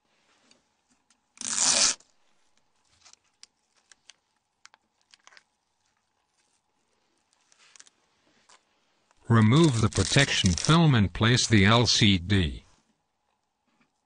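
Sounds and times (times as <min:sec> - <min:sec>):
short tearing sound: 0:01.4 - 0:02.1, 0:09.5 - 0:10.8.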